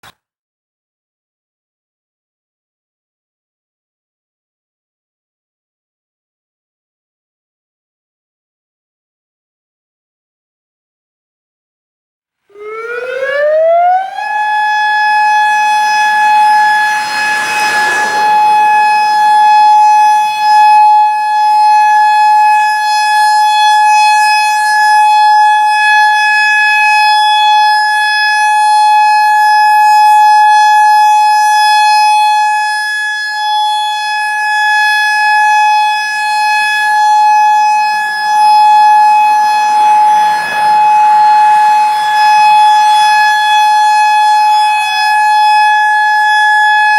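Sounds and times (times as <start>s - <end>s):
fainter siren lower tone: 12.5s - 46.9s
warning siren steady tone: 12.5s - 46.9s.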